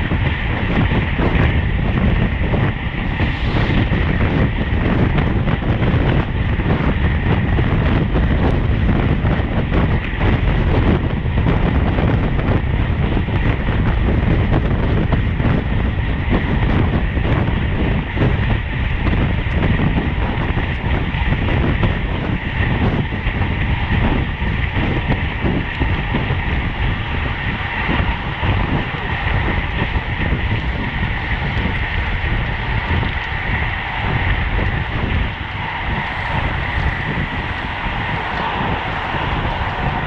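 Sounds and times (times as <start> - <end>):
faint high whine: 0.0 - 8.7, 32.1 - 40.0
bicycle rattling: 0.0 - 40.0
rushing wind: 0.0 - 40.0.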